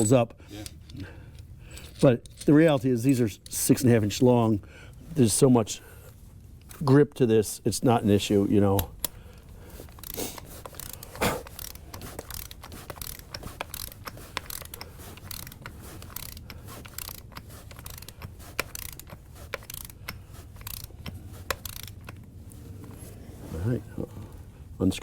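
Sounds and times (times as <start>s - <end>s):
ratchet wrench clicking: 9.9s - 22.2s.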